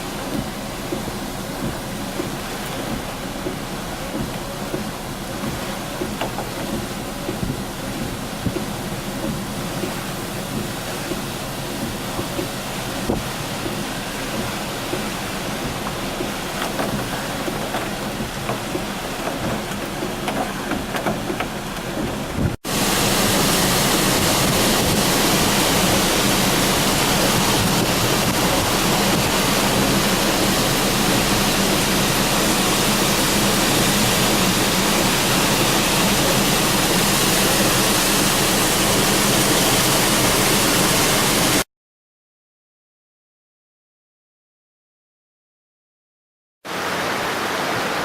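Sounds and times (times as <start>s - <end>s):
floodwater rushing roar: 0.0s - 41.6s, 46.7s - 48.0s
rain pattering: 0.0s - 41.6s.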